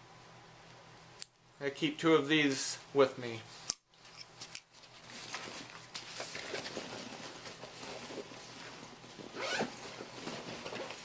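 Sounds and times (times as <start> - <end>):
rustling of items in a bag: 4.7 - 11.0.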